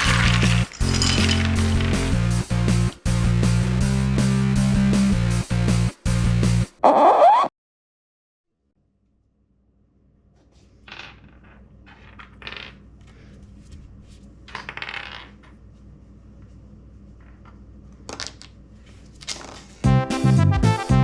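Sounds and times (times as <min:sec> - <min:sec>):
plastic pieces clattering: 0:00.0 - 0:02.2.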